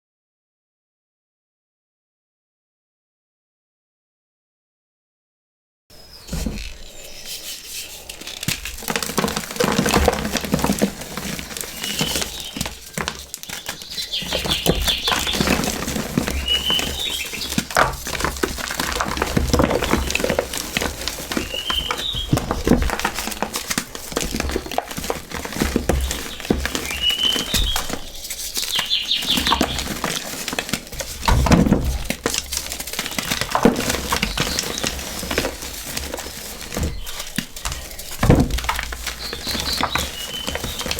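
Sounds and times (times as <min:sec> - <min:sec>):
birds chirping: 0:05.9 - 0:23.6, 0:24.2 - 0:30.3, 0:33.0 - 0:35.4, 0:36.2 - 0:40.9
crispy material crunching: 0:06.2 - 0:40.9.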